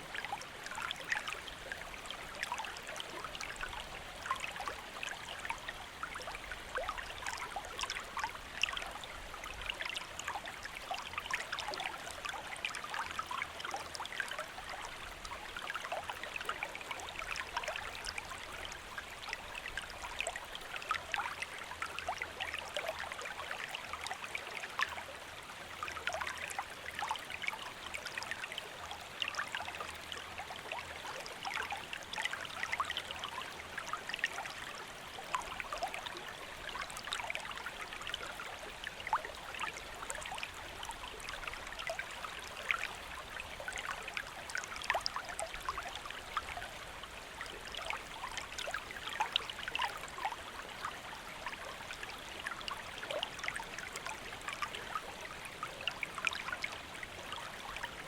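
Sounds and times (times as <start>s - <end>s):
stream flowing over rocks: 0.0s - 58.0s.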